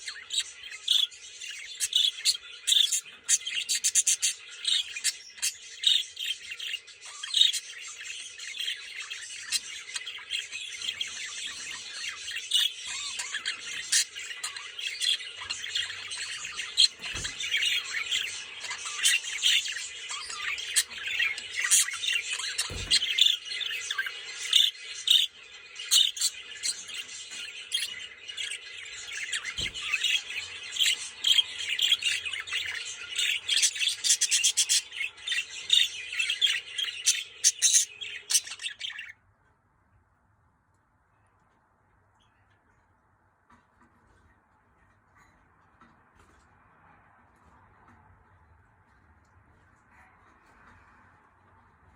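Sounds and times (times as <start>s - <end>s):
budgies chattering and squawking: 0.0s - 39.2s.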